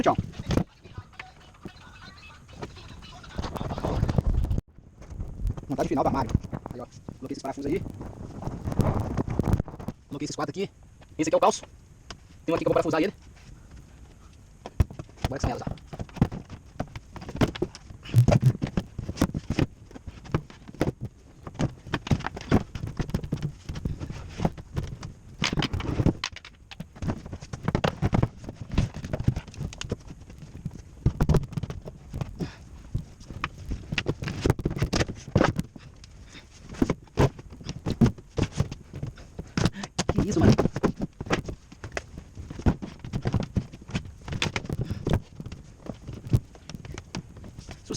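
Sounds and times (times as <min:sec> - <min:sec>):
wooden parts knocking: 0:14.7 - 0:30.0
wooden parts and tools clattering: 0:14.7 - 0:47.9.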